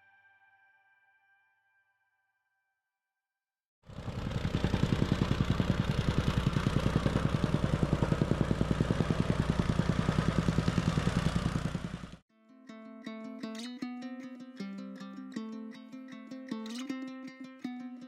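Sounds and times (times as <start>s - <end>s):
engine-driven machine pulsing: 3.9s - 12.2s.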